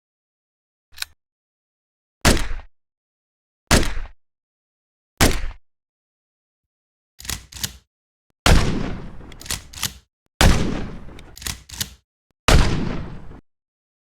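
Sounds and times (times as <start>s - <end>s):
sharp mechanical gun clicks: 0.9s - 1.2s, 7.2s - 7.8s, 9.1s - 12.0s
gunshots with echo: 8.5s - 11.4s, 12.5s - 13.4s.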